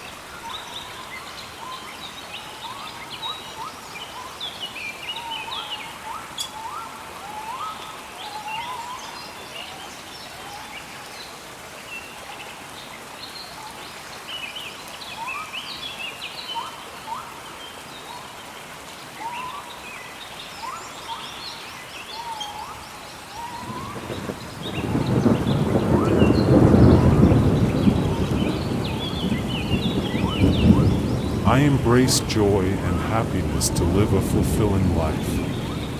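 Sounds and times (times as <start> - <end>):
birds calling: 23.4 - 31.4
rain hissing: 23.6 - 35.9
thunder rumble: 23.6 - 35.9.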